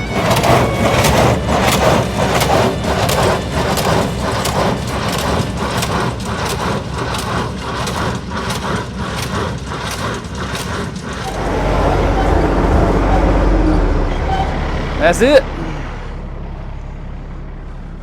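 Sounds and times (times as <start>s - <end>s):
hay baler rhythmic clatter: 0.0s - 15.4s
engine rumble: 0.0s - 18.0s.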